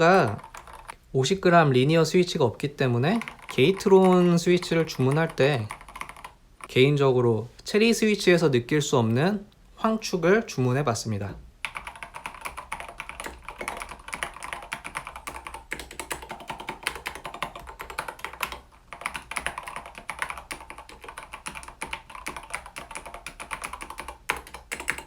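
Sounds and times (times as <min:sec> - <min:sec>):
mechanical keyboard typing: 0:00.0 - 0:01.0, 0:02.8 - 0:06.7, 0:11.6 - 0:25.0.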